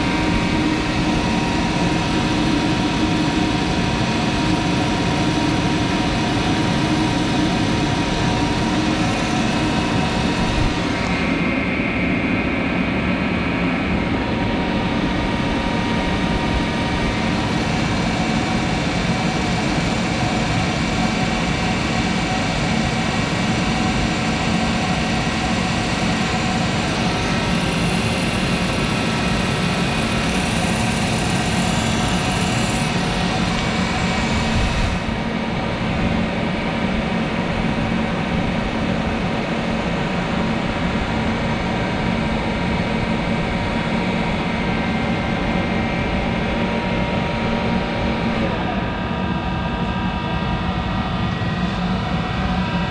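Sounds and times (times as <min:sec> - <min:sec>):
high whine: 0:00.0 - 0:52.8
lathe motor hum: 0:25.8 - 0:48.6.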